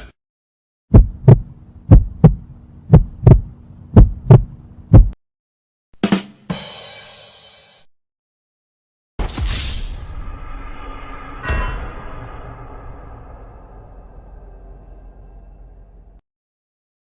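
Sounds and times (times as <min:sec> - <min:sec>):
heartbeat thumps: 0:00.9 - 0:05.2
hit with noisy ring: 0:10.6 - 0:15.9.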